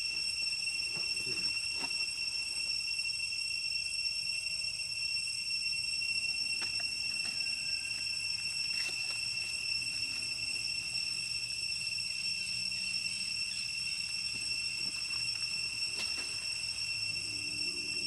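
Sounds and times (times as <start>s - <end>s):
insects droning: 0.0s - 18.0s.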